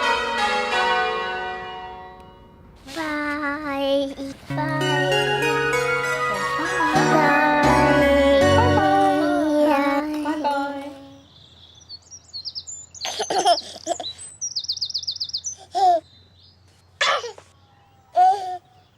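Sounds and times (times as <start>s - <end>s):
music with held notes: 0.0s - 2.8s, 4.5s - 9.6s
baby giggling: 4.6s - 11.1s, 13.0s - 14.2s, 15.6s - 16.0s, 18.2s - 18.6s
bird chirps and trill: 11.2s - 18.9s.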